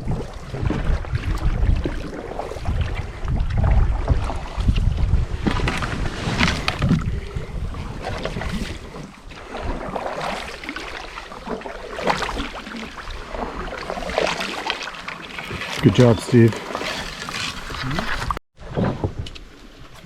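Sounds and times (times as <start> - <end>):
wind on microphone: 0.0 - 10.4
paddle splashing in water: 0.0 - 19.8.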